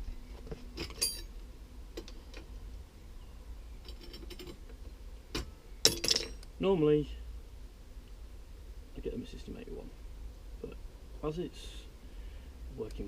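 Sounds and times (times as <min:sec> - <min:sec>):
high ringing clink: 0:00.9 - 0:01.3.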